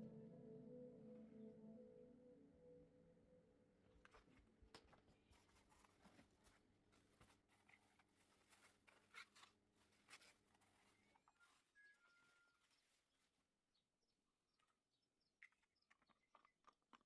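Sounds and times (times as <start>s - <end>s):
faint small clicks and rustles: 4.0s - 13.6s.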